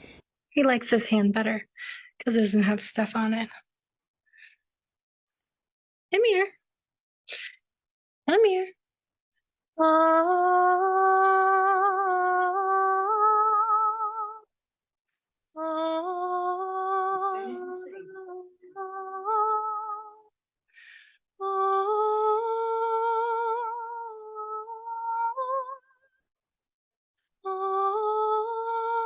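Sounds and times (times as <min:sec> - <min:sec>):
woman singing held notes: 0:17.2 - 0:18.4.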